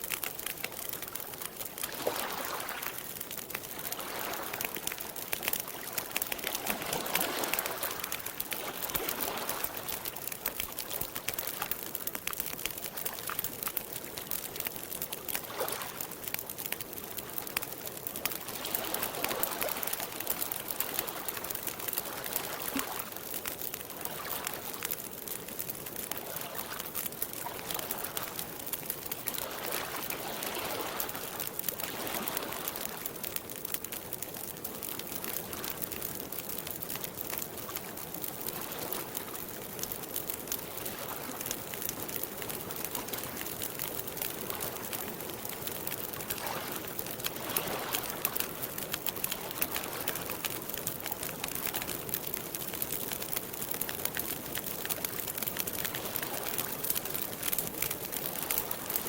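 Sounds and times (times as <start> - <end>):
campfire crackling: 0.0 - 59.0
water lapping at the shore: 0.0 - 59.0.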